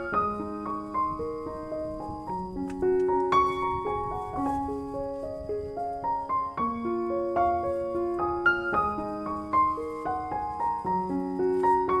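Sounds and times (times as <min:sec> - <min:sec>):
slow piano melody: 0:00.0 - 0:12.0.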